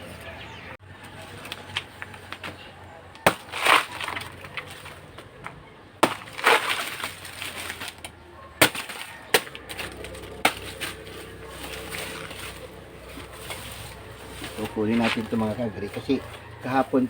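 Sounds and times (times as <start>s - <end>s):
knife chopping into banana trunk: 3.2s - 5.0s, 6.0s - 16.6s.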